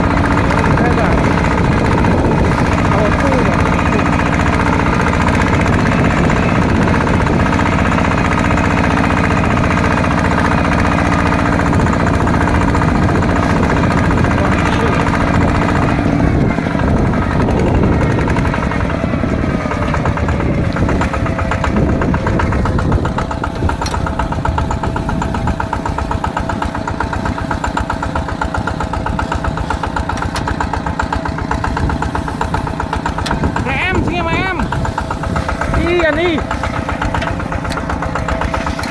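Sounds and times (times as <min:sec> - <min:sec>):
tractor diesel engine chugging: 0:00.0 - 0:38.9.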